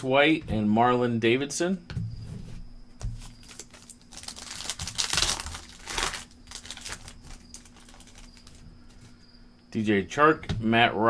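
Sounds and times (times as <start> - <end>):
wrapper crinkling and tearing: 3.2 - 8.6.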